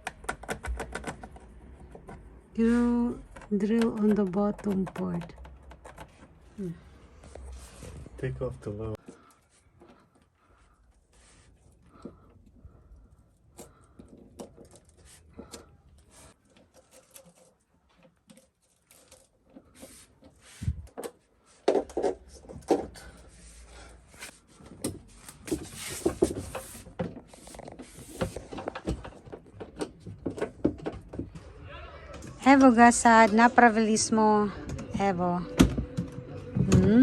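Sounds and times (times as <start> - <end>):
parts and tools clicking and rattling: 0.0 - 6.5, 11.7 - 23.4, 24.0 - 31.5.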